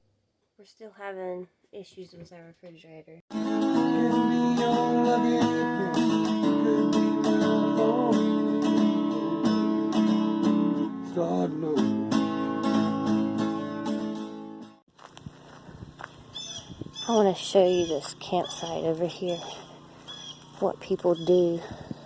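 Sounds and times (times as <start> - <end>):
acoustic guitar strumming: 3.3 - 14.8, 17.1 - 21.6.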